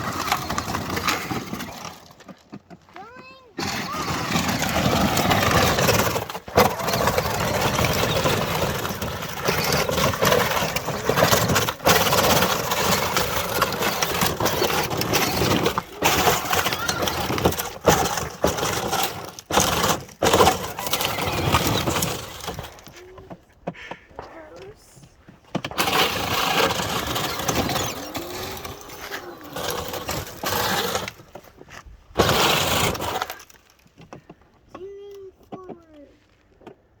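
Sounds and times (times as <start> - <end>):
tires grinding over rocks: 0.0 - 34.8
electric toy motors droning: 3.6 - 22.9, 25.8 - 31.4, 32.2 - 33.6.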